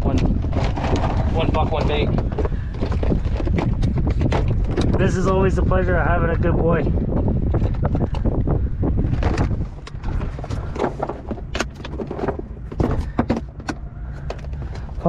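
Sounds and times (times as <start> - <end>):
sharp knocks and clicks of handling: 0.0 - 5.0, 9.1 - 15.0
low steady rumble: 0.0 - 15.0.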